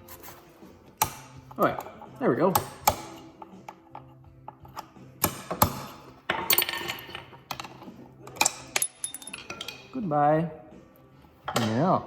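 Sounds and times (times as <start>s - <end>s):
metal tools clanking: 6.3s - 10.0s.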